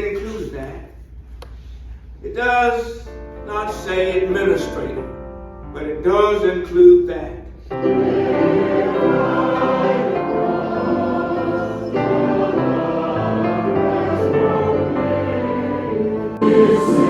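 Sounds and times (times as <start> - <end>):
choir singing held chords: 7.7 - 17.0.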